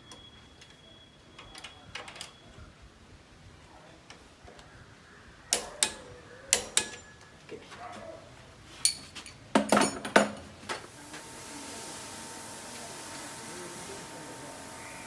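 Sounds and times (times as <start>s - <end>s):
metallic clinks and knocks: 8.8s - 10.4s.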